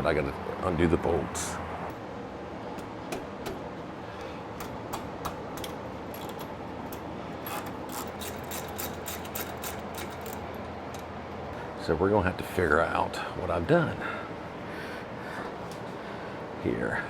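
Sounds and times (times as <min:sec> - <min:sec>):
ratchet wrench clicking: 0:07.4 - 0:10.5.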